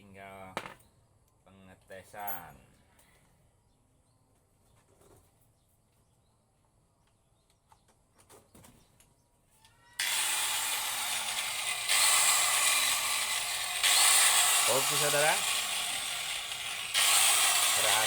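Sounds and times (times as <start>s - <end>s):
angle grinder motor running: 10.0s - 18.0s.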